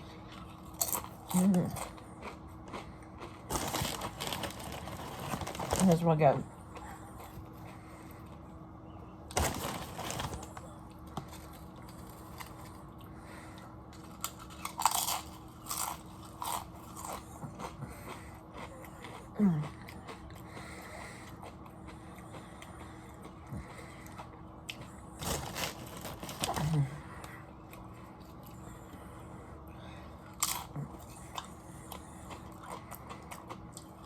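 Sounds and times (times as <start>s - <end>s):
crunching and chewing chips: 0.0s - 8.6s, 9.2s - 34.0s.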